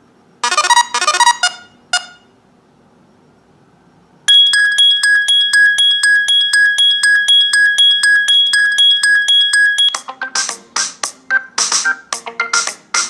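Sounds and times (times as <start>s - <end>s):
bell-like phone ringtone: 0.4s - 2.3s, 4.3s - 10.0s
chirping ringtone: 0.4s - 2.4s, 4.3s - 10.4s.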